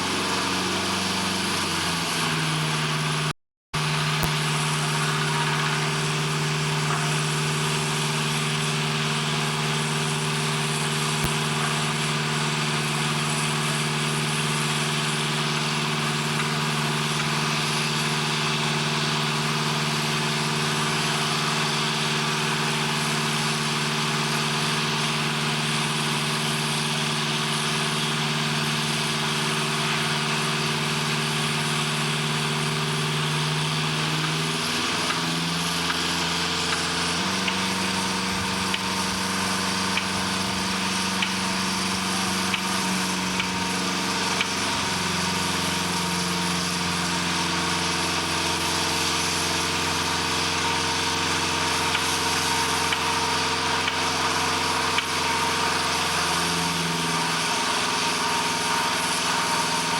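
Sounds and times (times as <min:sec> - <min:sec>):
heavy machinery engine drone: 0:00.0 - 0:59.9.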